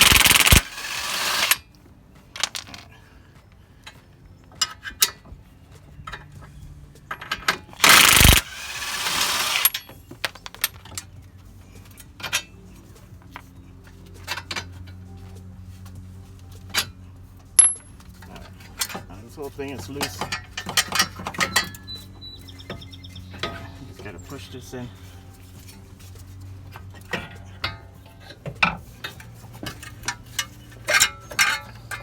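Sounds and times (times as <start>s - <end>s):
impact wrench hammering: 0.0s - 1.6s, 7.8s - 9.8s.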